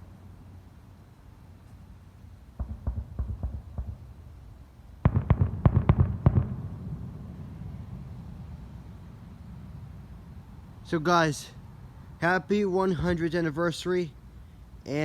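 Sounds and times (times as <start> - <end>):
fireworks bangs: 2.6 - 8.8.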